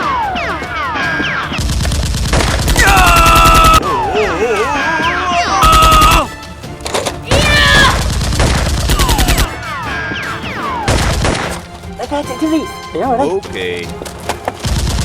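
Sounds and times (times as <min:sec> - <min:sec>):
background music: 0:00.0 - 0:15.0
automatic gunfire: 0:01.6 - 0:03.8, 0:07.8 - 0:09.5.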